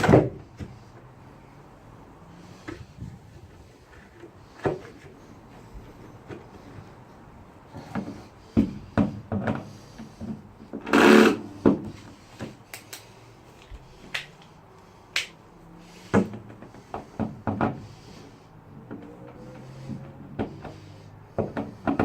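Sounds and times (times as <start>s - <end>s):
wooden planks and tools clattering: 18.8s - 22.0s.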